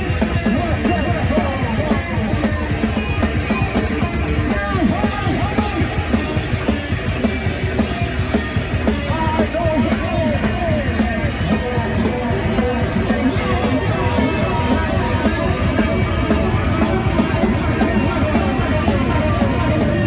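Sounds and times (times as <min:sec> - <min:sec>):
distorted bass guitar: 0:00.0 - 0:20.0
fast drumming: 0:00.0 - 0:20.0.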